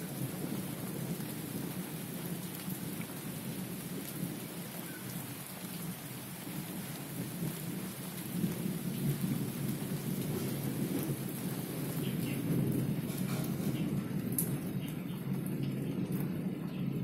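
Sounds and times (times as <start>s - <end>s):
heavy rain on leaves: 0.0s - 17.0s.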